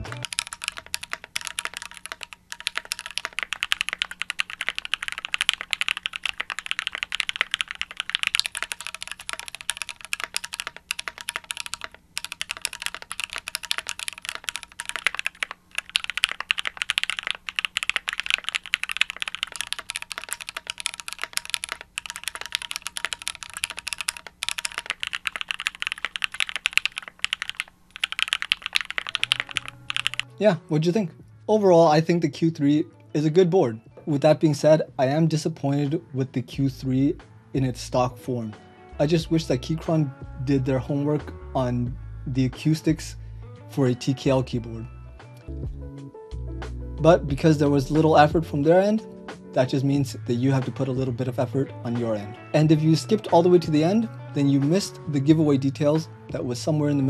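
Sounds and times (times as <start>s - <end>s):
fast typing on mechanical keyboard: 0.0s - 30.3s.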